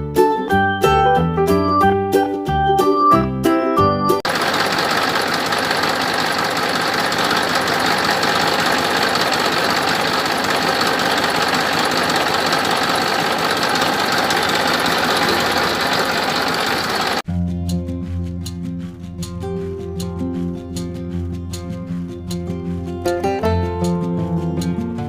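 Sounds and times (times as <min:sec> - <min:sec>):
small motor rattling: 0:04.3 - 0:17.2.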